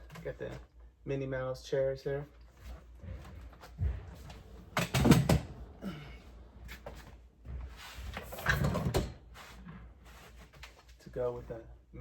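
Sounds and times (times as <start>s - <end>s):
household items knocking and clattering: 4.8s - 5.6s.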